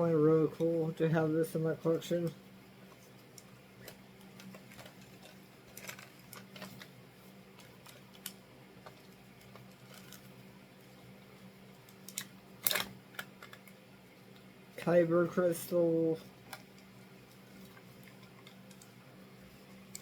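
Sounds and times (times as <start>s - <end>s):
faint steady low hum: 0.0s - 20.0s
packaging and plastic clicking: 3.3s - 6.9s.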